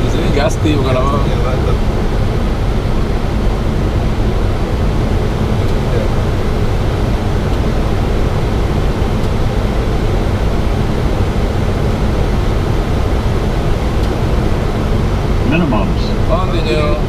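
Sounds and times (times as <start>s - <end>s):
jet engines running: 0.0s - 17.0s
rush of airflow in cockpit: 0.0s - 17.0s.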